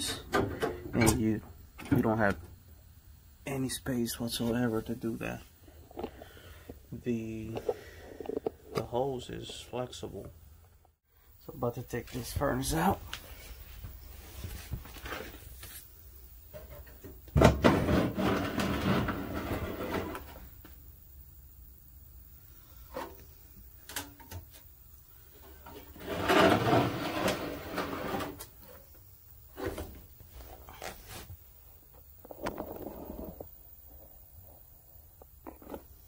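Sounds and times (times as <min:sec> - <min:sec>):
metal scraping and rubbing: 0:25.6 - 0:28.8.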